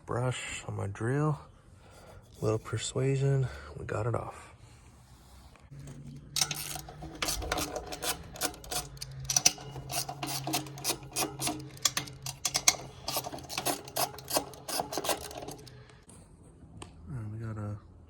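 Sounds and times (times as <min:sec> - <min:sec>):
metal tools clicking and scraping: 0:05.7 - 0:16.0.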